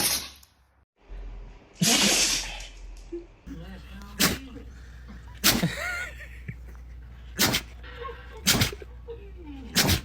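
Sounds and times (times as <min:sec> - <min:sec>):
dog sneezing: 0:04.2 - 0:04.4, 0:05.4 - 0:05.8, 0:07.4 - 0:07.8, 0:08.4 - 0:08.8, 0:09.7 - 0:10.0.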